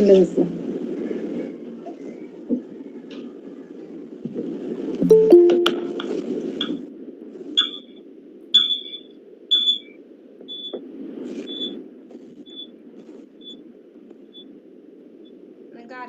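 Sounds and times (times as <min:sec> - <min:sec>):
low background hum: 0:00.0 - 0:16.0
high-pitched electronic beep: 0:05.0 - 0:06.2.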